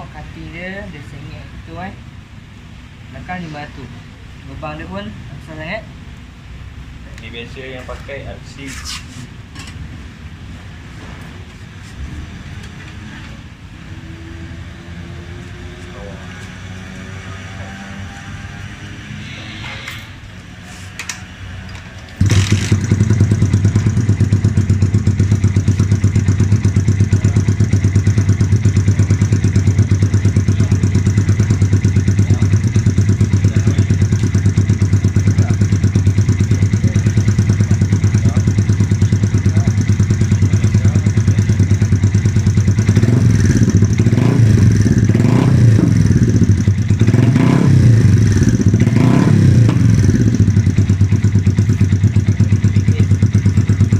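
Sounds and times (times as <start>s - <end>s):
motorcycle engine starting: 15.2s - 53.9s
motorcycle engine idling: 22.2s - 53.9s
motorcycle throttle blips: 22.2s - 53.9s.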